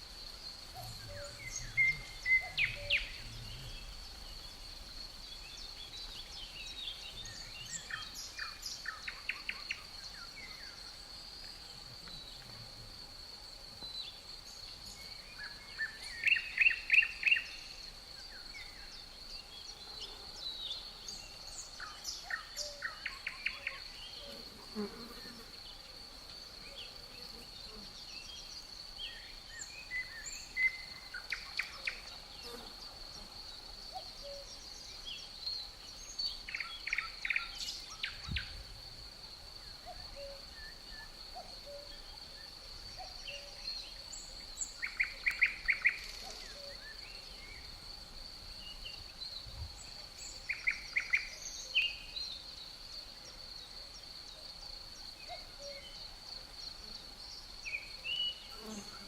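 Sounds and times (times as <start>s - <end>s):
high-pitched insect trill: 0.0s - 59.0s
birds singing: 0.8s - 10.8s.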